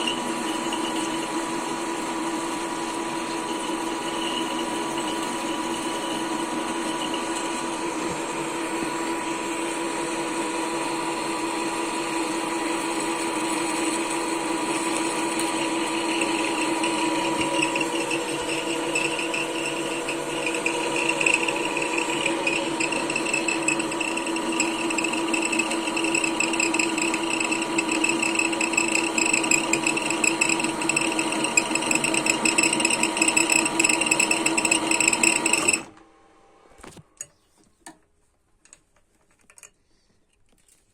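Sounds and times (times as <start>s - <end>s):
machine tool running: 10.3s - 35.9s.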